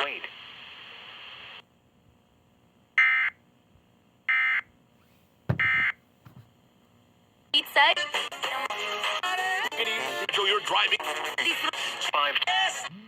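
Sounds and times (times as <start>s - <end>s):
radio hiss: 0.0s - 1.6s.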